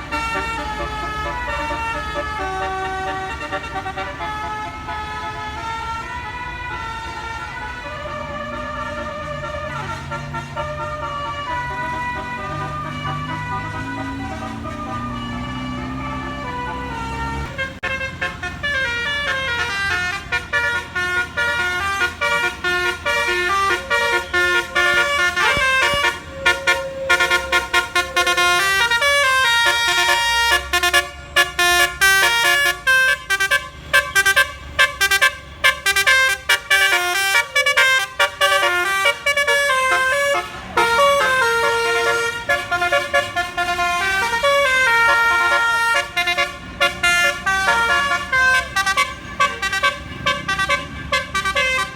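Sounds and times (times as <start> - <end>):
low engine rumble: 0.0 - 30.0
multi-tone air horn melody: 0.0 - 51.9.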